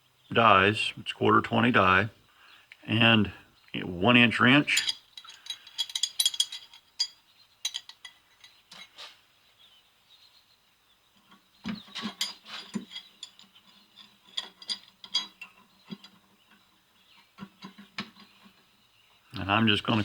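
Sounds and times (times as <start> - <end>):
metal tools clinking: 4.4 - 9.1, 11.7 - 16.3.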